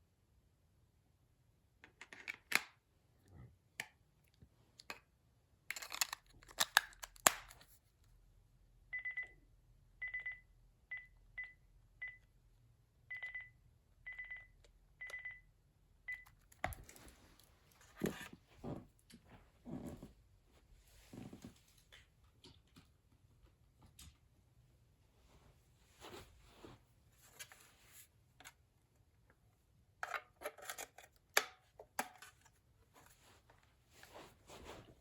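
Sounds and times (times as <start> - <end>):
phone keypad beeps: 8.9 - 9.4, 10.0 - 12.2, 13.1 - 15.5, 16.1 - 16.4.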